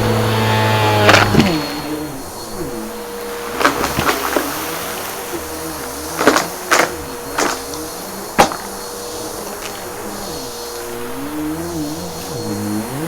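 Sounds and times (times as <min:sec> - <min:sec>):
upright vacuum running: 0:00.0 - 0:13.0
debris crunching and cracking: 0:00.4 - 0:02.1, 0:03.0 - 0:10.0.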